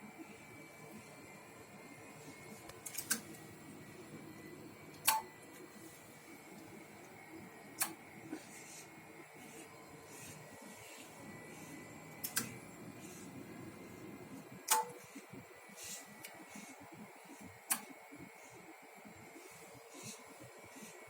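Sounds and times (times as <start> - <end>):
faint electronic hum: 0.0 - 21.0
sharp switching clicks: 5.0 - 5.3, 14.7 - 15.0.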